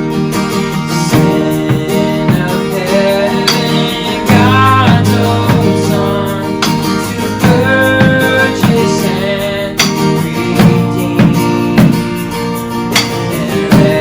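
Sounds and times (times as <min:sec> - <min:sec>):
acoustic guitar: 0:00.0 - 0:14.0
worship band music: 0:00.0 - 0:14.0
bass notes: 0:01.2 - 0:12.1.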